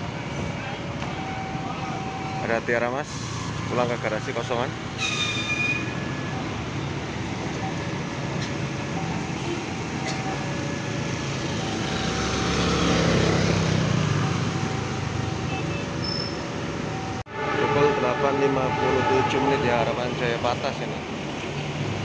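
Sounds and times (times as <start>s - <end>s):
bus engines running: 0.0s - 17.3s, 18.6s - 22.0s
traffic noise: 0.0s - 22.0s
short high squeal: 5.0s - 6.0s, 16.0s - 16.5s.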